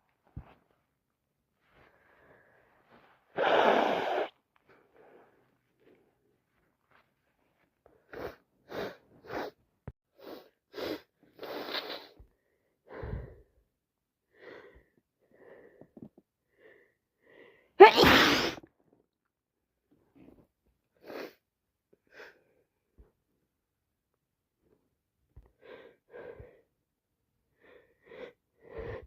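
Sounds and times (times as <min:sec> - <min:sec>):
woman sneezing: 0:17.8 - 0:18.6.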